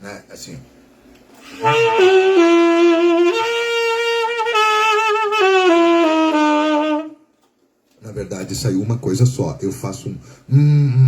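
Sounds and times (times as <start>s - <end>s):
saxophone with singing voice: 1.5s - 7.2s.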